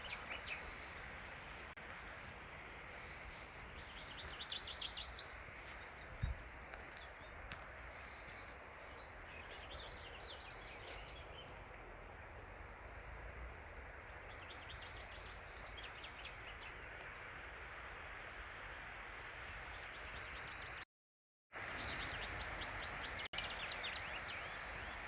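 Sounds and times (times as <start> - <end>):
small birds chirping: 0.0 - 12.6, 21.6 - 25.0
mountain stream rushing: 0.0 - 14.4.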